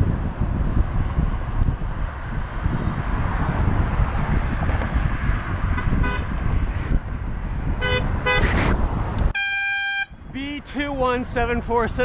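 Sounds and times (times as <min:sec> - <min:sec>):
wind noise on microphone: 0:00.0 - 0:12.0
car horn tooting: 0:05.8 - 0:06.3, 0:07.8 - 0:08.6, 0:09.3 - 0:10.2.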